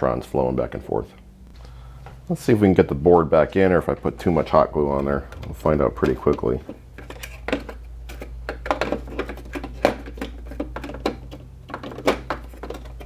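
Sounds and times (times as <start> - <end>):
steady low hum: 0.0 - 13.0
plastic parts clicking and scraping: 4.2 - 13.0.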